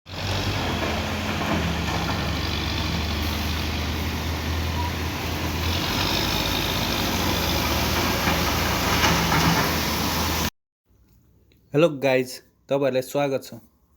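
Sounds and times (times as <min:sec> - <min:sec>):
large vehicle engine running: 0:00.1 - 0:10.5.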